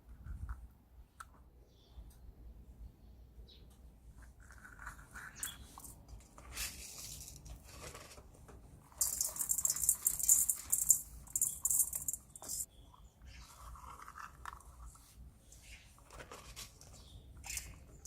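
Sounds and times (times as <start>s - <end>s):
light clicks and scrapes: 4.2s - 18.0s
rapid dry rattling scrape: 4.4s - 8.3s, 8.9s - 12.7s.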